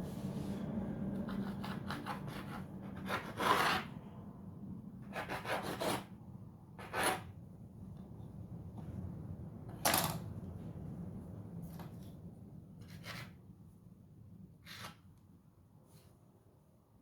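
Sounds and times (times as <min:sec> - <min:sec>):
blade scraping dough on board: 0:01.2 - 0:03.9, 0:05.1 - 0:06.1, 0:06.8 - 0:07.3.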